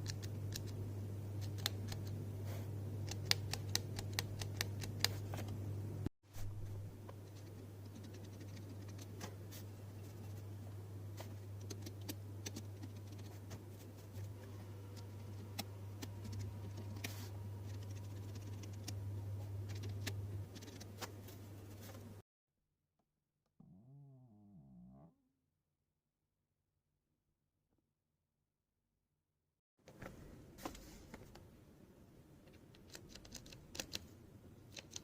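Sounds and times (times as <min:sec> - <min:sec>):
steady low hum: 0:00.0 - 0:22.2.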